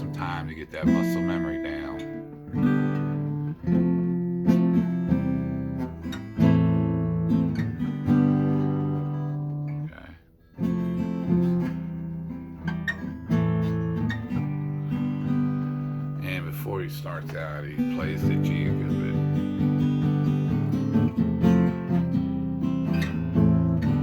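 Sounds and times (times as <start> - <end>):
acoustic guitar strumming chords: 0.0 - 24.0.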